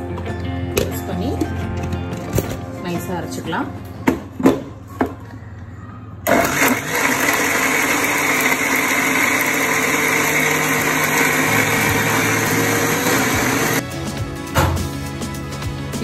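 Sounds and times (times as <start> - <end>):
mixer grinder running: 6.2 - 13.8.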